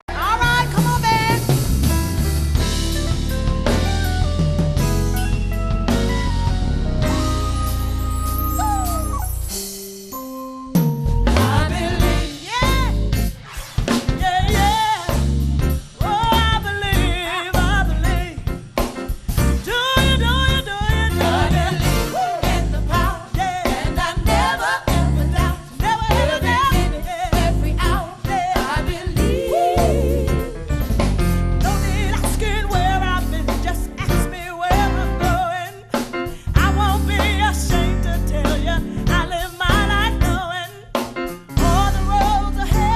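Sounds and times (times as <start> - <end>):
band with bass and drums: 0.0 - 42.9
woman singing gospel-soul: 0.1 - 1.5, 11.3 - 13.0, 14.0 - 15.3, 16.0 - 18.6, 19.6 - 30.6, 31.6 - 41.0, 41.6 - 42.9.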